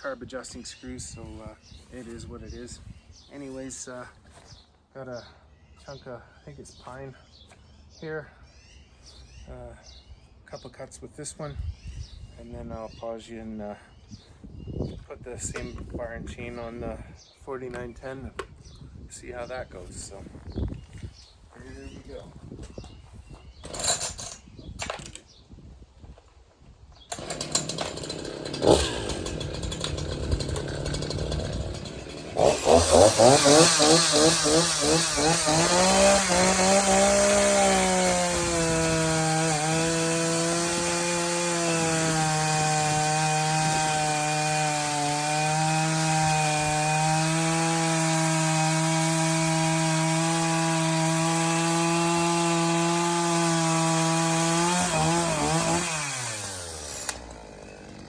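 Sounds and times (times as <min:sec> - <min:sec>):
chainsaw cutting wood: 0:23.7 - 0:25.0, 0:27.1 - 0:58.0
chainsaw idling: 0:27.1 - 0:58.0.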